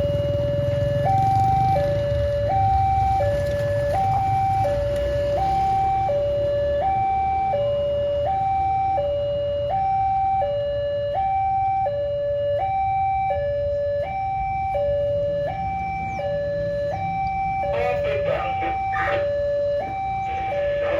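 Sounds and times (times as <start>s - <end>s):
two-tone crossing alarm: 0.0s - 20.9s.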